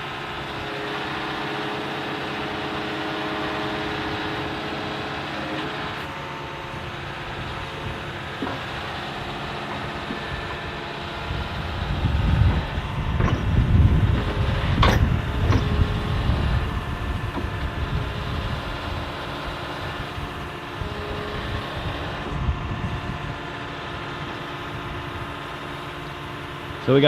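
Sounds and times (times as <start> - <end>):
excavator engine running: 0.0 - 27.0
sharp metal clanks: 13.1 - 16.1.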